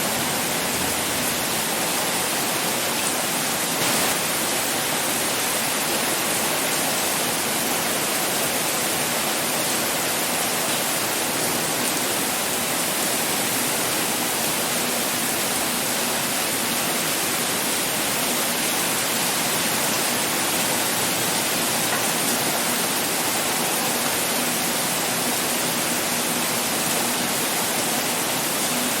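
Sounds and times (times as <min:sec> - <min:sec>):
heavy rain pouring: 0:00.0 - 0:29.0.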